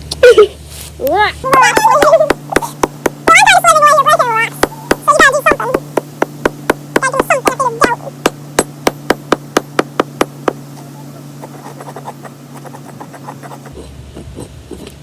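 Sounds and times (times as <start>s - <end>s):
hammer striking rock: 1.5s - 3.6s, 4.5s - 10.7s.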